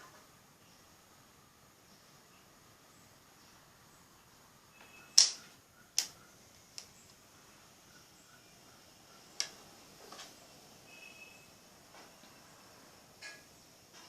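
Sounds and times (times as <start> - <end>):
sharp clicks of hard objects: 5.2 - 6.2.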